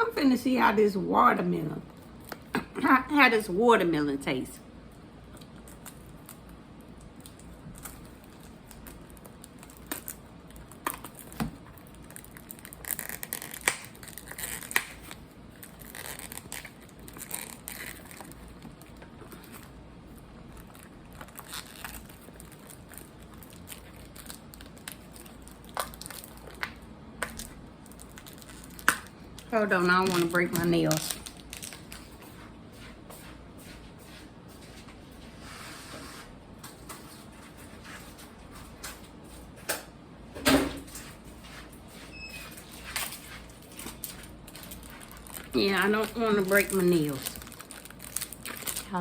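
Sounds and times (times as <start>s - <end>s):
packaging crinkling and tearing: 5.3s - 32.2s, 42.5s - 49.0s.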